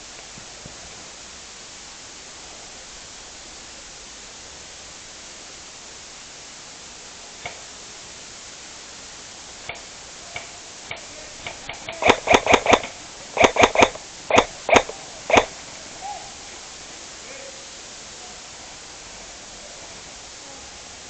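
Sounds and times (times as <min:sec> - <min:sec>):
airsoft guns firing: 0:10.3 - 0:16.1.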